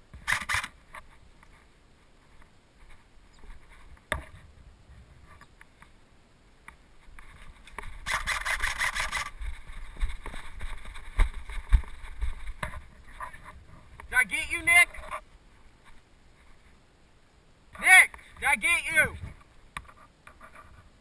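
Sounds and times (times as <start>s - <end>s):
wind: 0.0s - 21.0s
airsoft gun rapid shots: 8.1s - 9.3s.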